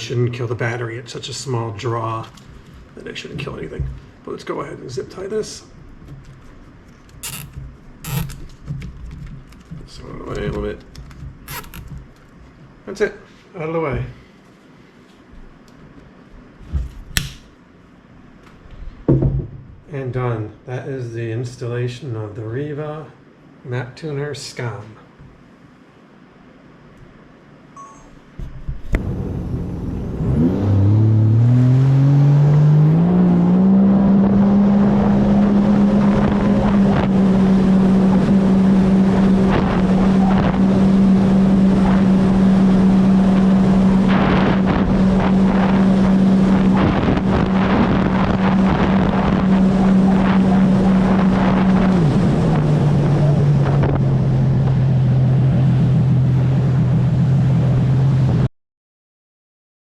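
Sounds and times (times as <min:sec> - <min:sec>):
watercraft engine accelerating: 0:28.9 - 0:58.5
rush of wind and water: 0:34.1 - 0:58.5.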